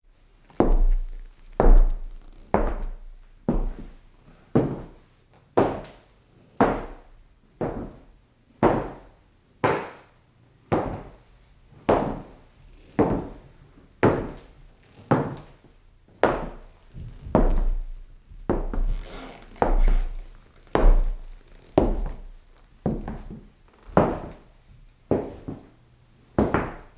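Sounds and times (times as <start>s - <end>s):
slow footsteps on wooden floor: 0.4s - 5.0s, 6.6s - 10.0s, 12.9s - 13.4s, 14.0s - 24.5s, 25.1s - 25.7s, 26.4s - 26.9s.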